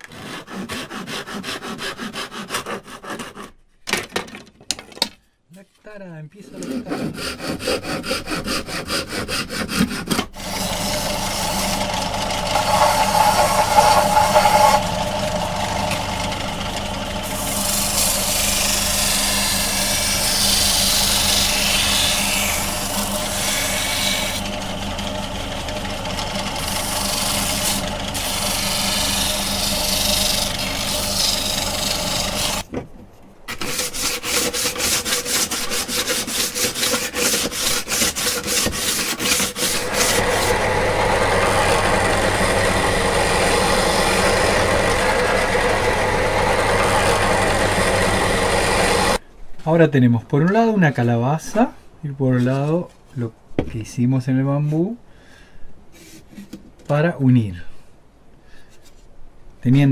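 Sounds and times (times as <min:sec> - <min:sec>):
sawing or rasping strokes: 0:00.0 - 0:03.6, 0:06.4 - 0:32.6, 0:33.5 - 0:49.2
steady grinding noise: 0:06.6 - 0:32.7, 0:33.5 - 0:49.2.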